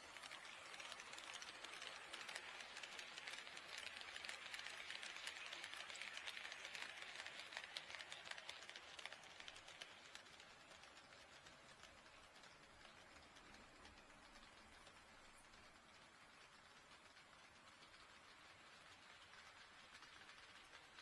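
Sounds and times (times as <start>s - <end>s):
model train wheels clicking: 0.0s - 21.0s.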